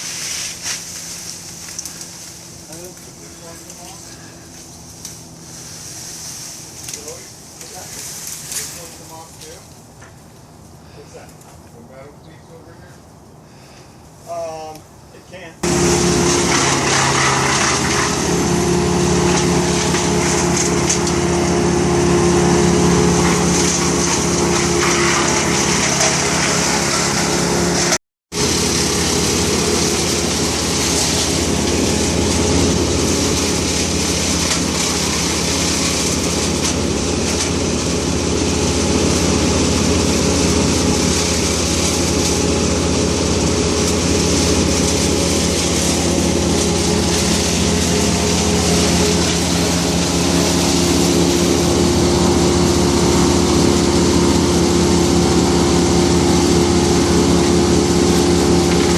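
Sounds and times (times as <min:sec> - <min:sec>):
engine running steadily: 0:00.0 - 0:58.9.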